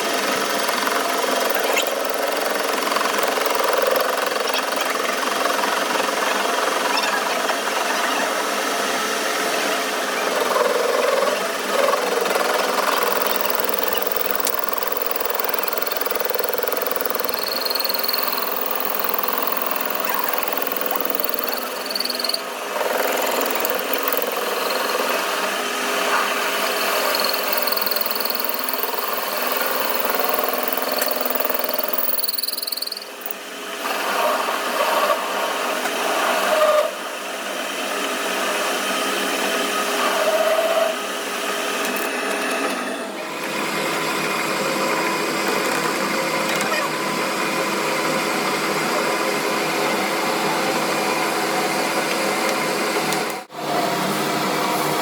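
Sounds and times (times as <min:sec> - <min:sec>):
power tools whirring: 0:00.0 - 0:06.7, 0:08.4 - 0:34.0.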